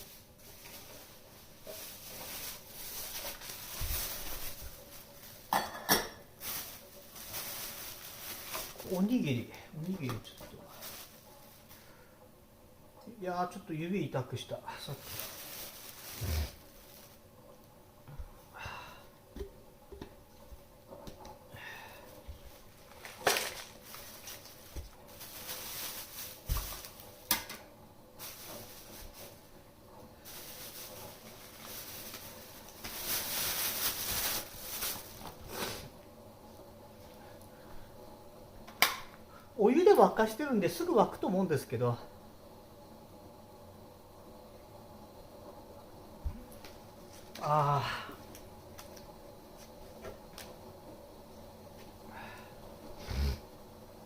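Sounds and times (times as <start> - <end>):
rustling and handling noises: 0.0 - 12.0, 14.8 - 18.5, 22.0 - 38.0, 46.2 - 47.5, 48.2 - 50.6
faint steady hiss: 0.0 - 54.0.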